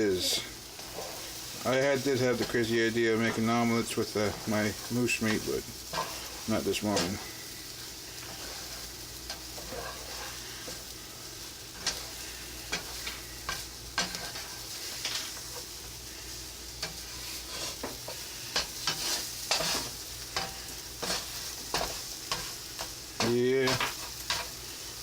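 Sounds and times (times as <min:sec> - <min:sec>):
eggs sizzling in a frying pan: 0:00.0 - 0:25.0
utensil scraping and knocking pan: 0:02.2 - 0:07.3, 0:08.2 - 0:10.9, 0:11.8 - 0:15.7, 0:16.8 - 0:24.6.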